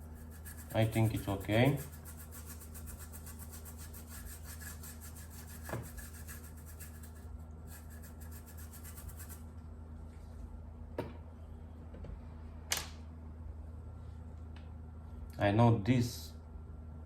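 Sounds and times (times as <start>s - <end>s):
rapid rubbing or scratching: 0.0s - 9.5s
low electrical hum: 0.0s - 17.0s.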